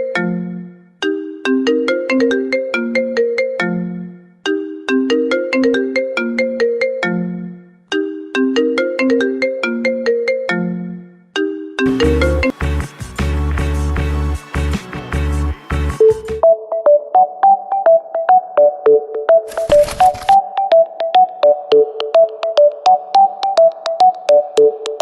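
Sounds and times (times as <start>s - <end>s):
phone ringtone melody: 0.0s - 25.0s
electronic music with heavy bass: 11.8s - 16.4s.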